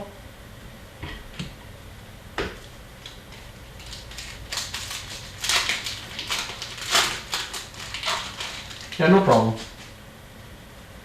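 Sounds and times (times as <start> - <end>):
foil wrappers crinkling: 2.6 - 10.0.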